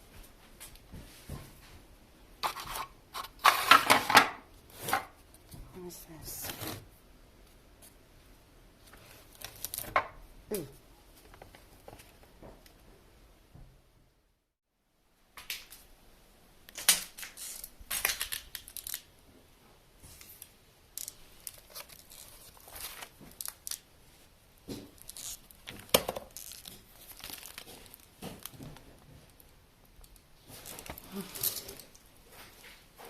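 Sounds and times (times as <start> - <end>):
paper and debris crinkling: 8.8 - 10.0, 20.0 - 32.8.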